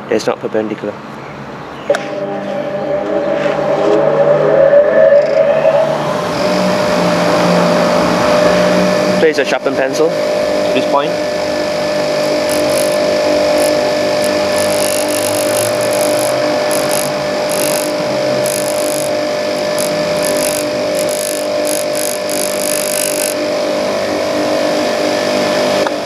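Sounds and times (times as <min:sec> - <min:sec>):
bench grinder humming: 0:10.1 - 0:25.8
pencil scraping grinding wheel: 0:12.2 - 0:23.4.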